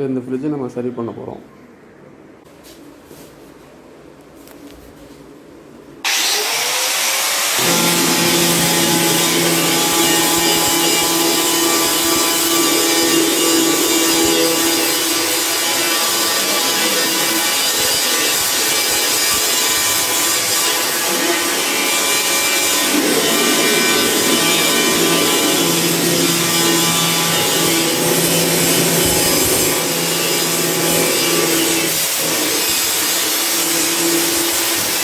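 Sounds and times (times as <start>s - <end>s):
angle grinder grinding steel: 6.1s - 35.0s.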